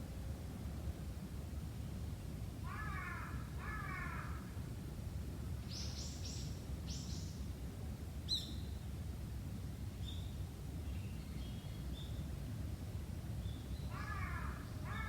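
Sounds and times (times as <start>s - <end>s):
crow cawing: 2.7s - 4.4s, 13.9s - 15.0s.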